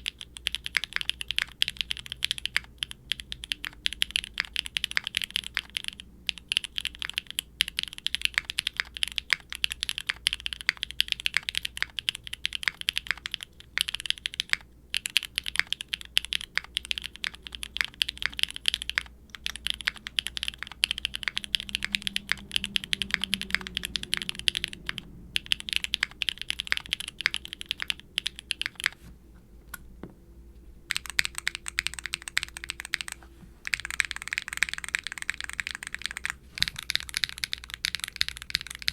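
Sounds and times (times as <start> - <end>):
mechanical keyboard typing: 0.0 - 29.0, 30.9 - 38.9.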